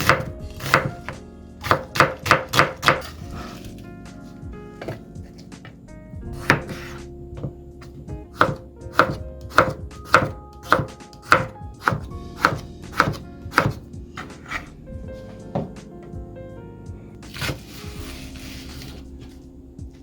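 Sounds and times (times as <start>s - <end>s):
knife chopping on cutting board: 0.0s - 3.7s, 4.8s - 5.0s, 6.4s - 7.6s, 8.3s - 14.7s, 17.3s - 19.0s.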